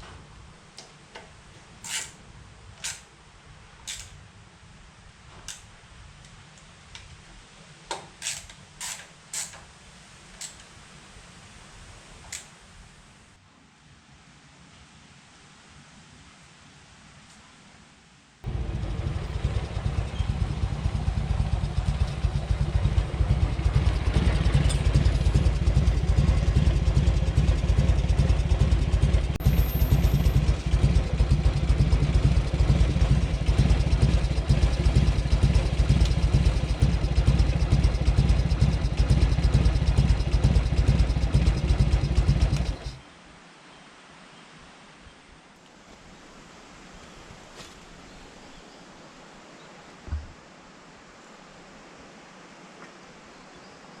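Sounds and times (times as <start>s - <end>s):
motorcycle engine running: 18.5s - 43.0s.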